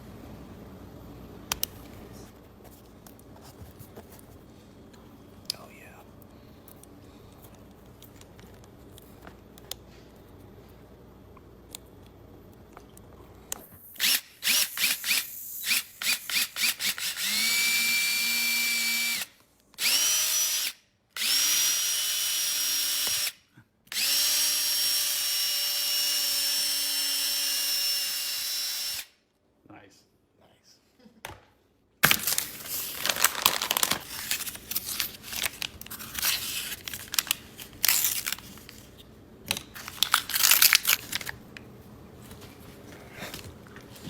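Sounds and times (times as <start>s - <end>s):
small electric motor whining: 14.0s - 29.2s.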